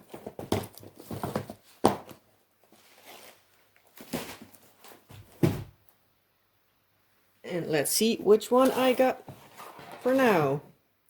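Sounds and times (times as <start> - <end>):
cardboard boxes knocking: 0.0 - 2.2, 5.1 - 5.8
rustling: 0.0 - 5.7.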